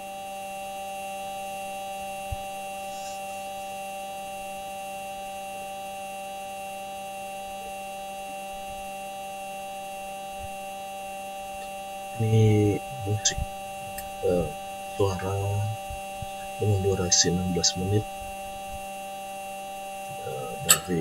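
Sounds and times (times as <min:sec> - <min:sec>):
rover driving hum and whine: 0:07.4 - 0:21.0.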